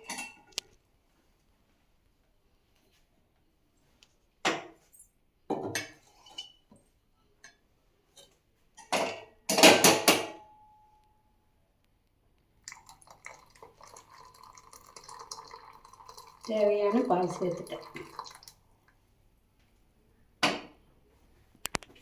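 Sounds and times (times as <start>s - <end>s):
milk pouring: 12.6s - 19.0s
kitchen vessels clinking: 14.1s - 18.4s.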